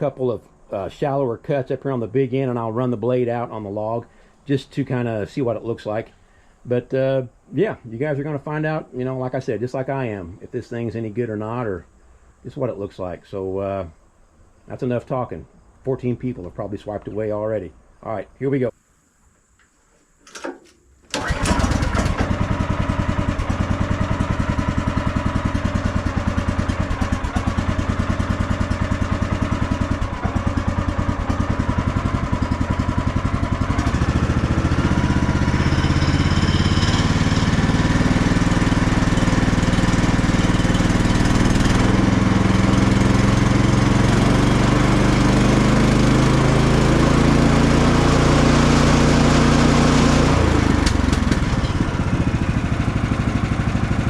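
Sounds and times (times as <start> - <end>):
sawmill gasoline engine running: 21.1 - 54.0.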